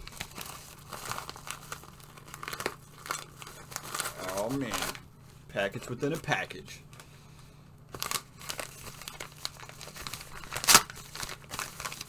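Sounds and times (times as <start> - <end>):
packaging crinkling and tearing: 0.0 - 12.0.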